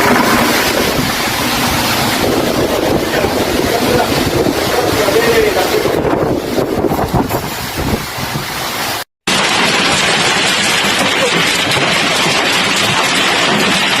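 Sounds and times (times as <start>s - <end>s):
wind buffeting microphone: 0.0s - 9.0s
heavy rain hiss: 0.0s - 14.0s.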